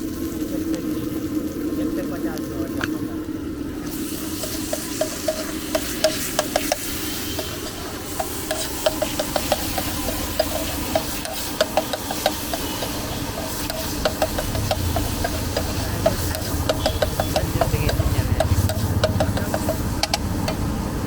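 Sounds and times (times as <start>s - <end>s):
food sizzling: 0.0s - 21.0s
metal spatula scraping pan: 4.0s - 20.2s.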